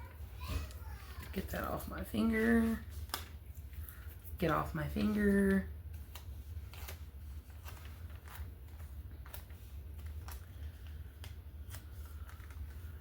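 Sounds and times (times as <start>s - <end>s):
faint clicks and taps of paper: 7.6s - 13.0s.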